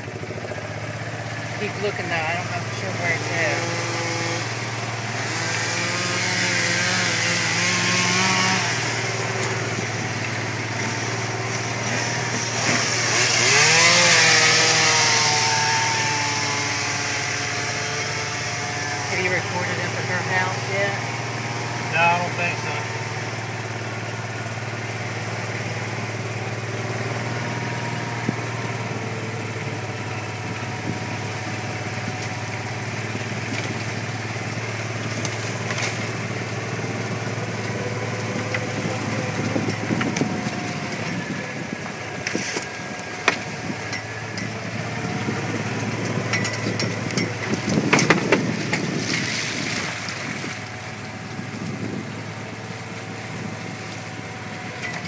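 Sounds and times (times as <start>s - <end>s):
vehicle engine humming: 0.0s - 55.0s.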